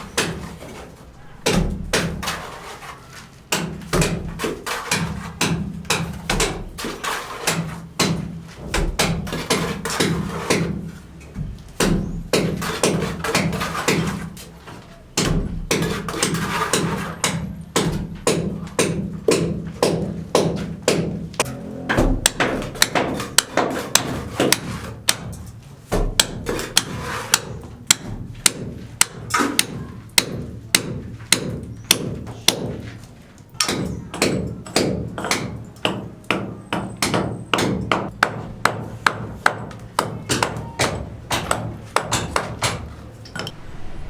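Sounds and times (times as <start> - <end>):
steady low hum: 43.4 - 44.0.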